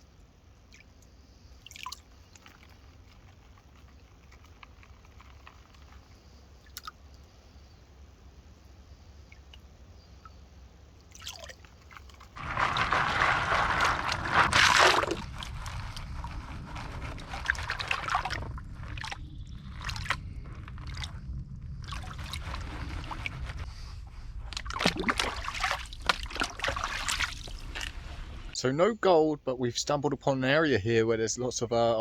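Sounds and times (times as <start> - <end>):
stream water sloshing: 11.0 - 16.0, 16.7 - 21.1, 24.5 - 28.6
water splashing: 11.0 - 28.6.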